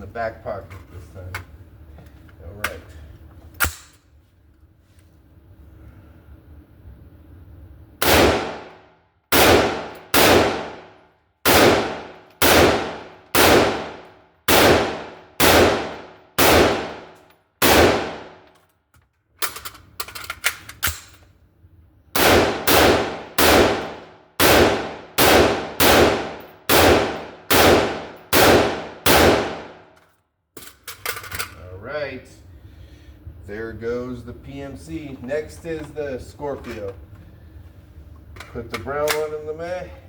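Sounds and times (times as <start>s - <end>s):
rifle shots: 8.0s - 18.4s, 22.2s - 29.9s
magazine change clicks and clatter: 18.4s - 21.3s.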